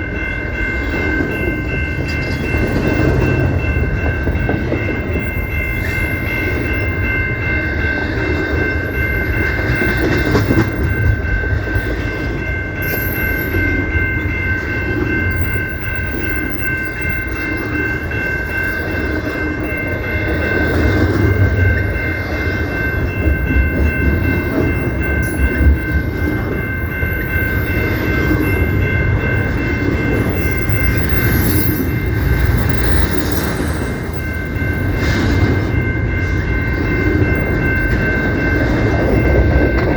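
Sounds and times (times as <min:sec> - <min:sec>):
high-pitched whine: 0:00.0 - 0:39.9
train rumble and wheel clatter: 0:00.0 - 0:39.9.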